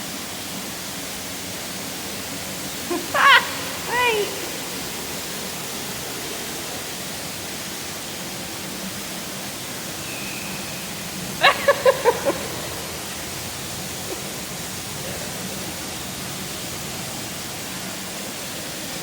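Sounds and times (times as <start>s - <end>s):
waterfall rushing: 0.0s - 19.0s
faint thin whistle: 10.0s - 11.0s.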